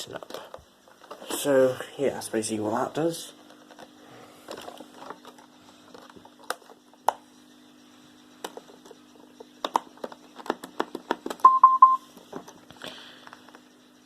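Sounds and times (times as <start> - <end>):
robot vacuum double beep: 11.4 - 12.0.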